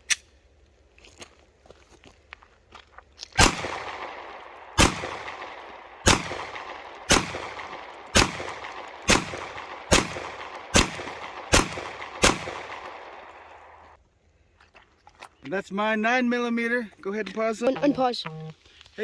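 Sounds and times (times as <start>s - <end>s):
pistol shots: 3.4s - 14.0s.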